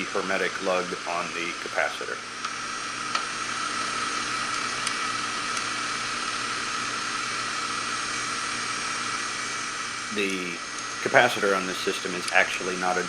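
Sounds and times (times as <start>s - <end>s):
heat pump unit hissing: 0.0s - 13.0s.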